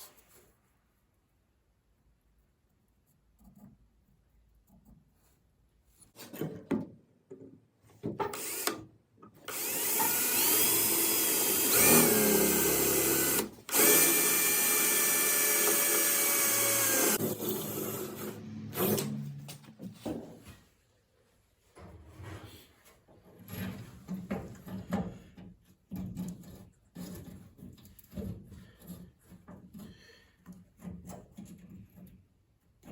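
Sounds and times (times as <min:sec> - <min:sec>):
electric drill whine: 0:08.3 - 0:08.8, 0:09.5 - 0:19.0.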